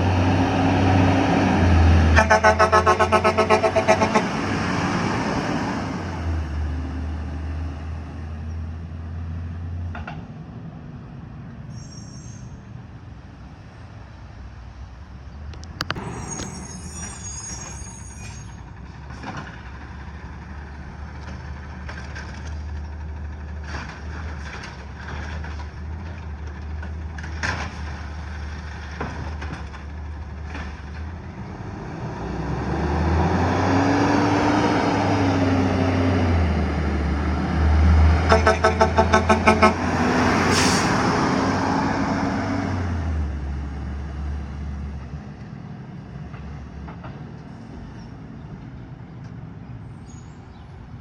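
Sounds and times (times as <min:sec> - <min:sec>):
heavy truck engine running: 0:00.0 - 0:11.5, 0:12.7 - 0:49.8
brief high squeal: 0:11.7 - 0:12.6, 0:16.0 - 0:18.6.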